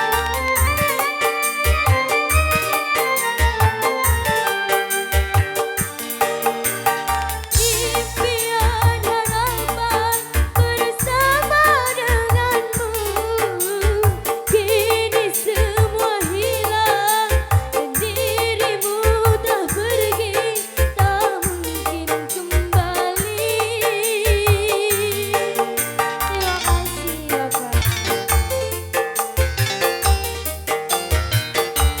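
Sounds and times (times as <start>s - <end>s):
keyboard drum and bass beat: 0.0s - 32.0s
ornamented keyboard melody: 0.0s - 32.0s
woman singing: 7.5s - 28.6s.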